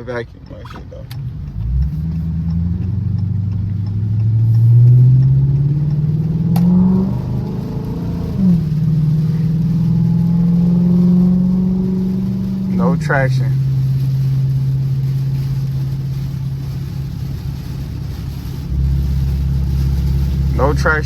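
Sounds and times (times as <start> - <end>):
car engine accelerating: 0.0 - 21.0.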